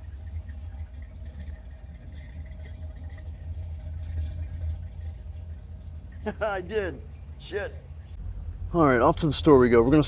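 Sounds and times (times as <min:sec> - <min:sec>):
car engine low rumble: 0:08.2 - 0:10.0.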